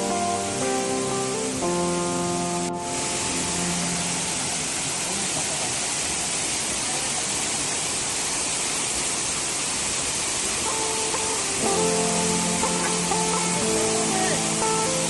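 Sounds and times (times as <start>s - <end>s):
waterfall rushing: 0.0s - 15.0s
faint music: 10.6s - 15.0s.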